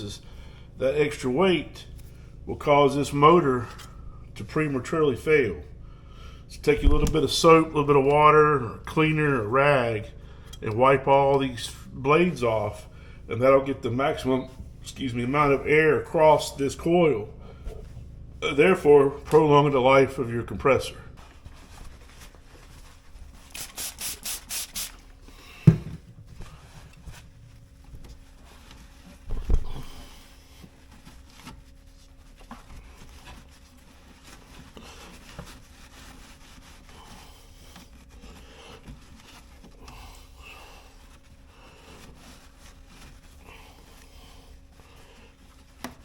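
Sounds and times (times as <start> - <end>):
rubbing and scraping: 11.5 - 25.4, 26.0 - 46.0
short hissing bursts: 23.5 - 25.0
heavy thump: 25.6 - 26.2, 29.3 - 30.1.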